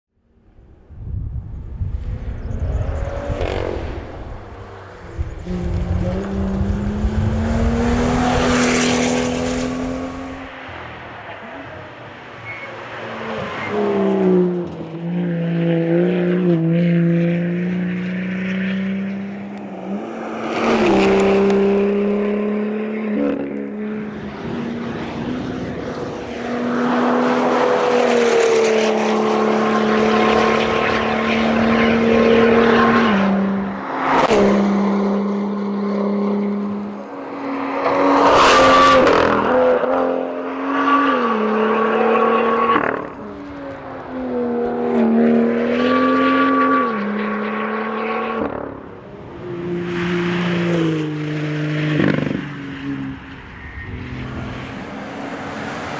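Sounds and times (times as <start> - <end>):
race car engine revving: 2.4 - 10.7, 12.5 - 55.9
loud rushing noise: 3.1 - 11.2.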